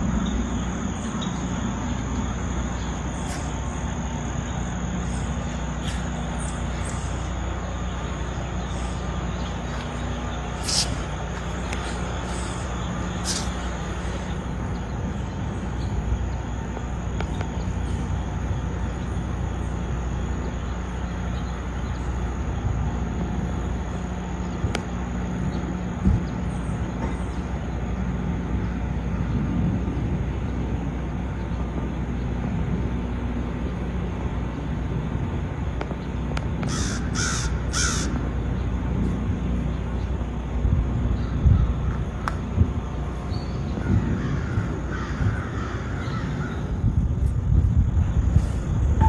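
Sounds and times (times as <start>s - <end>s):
bird calling harshly: 0.2s - 14.5s, 36.7s - 38.2s.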